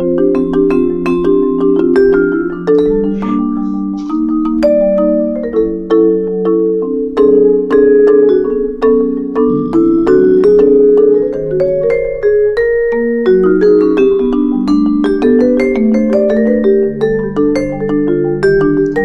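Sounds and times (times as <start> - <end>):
gentle instrumental melody: 0.0 - 19.0.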